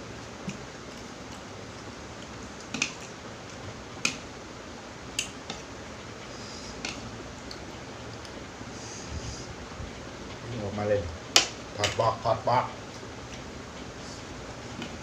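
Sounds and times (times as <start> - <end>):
steady hiss: 0.0 - 15.0
sharp clicks and snaps: 5.2 - 5.6.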